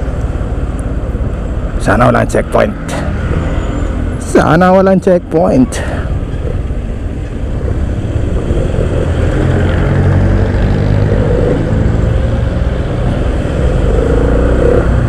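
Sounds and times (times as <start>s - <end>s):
wind rumble on microphone: 6.1s - 15.0s
motorcycle engine at speed: 8.2s - 15.0s.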